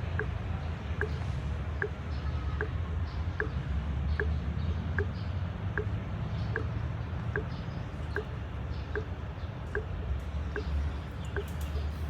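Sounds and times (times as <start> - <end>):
low steady rumble: 0.0 - 12.0.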